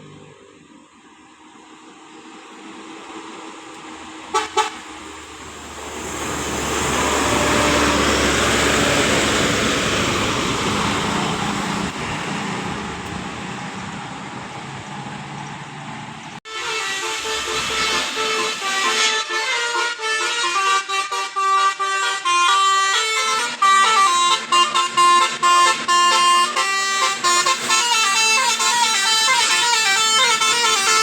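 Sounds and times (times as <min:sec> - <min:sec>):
bus passing: 0:00.0 - 0:31.0
multi-tone bus horn playing tune: 0:04.3 - 0:05.0, 0:06.0 - 0:11.0, 0:16.4 - 0:31.0.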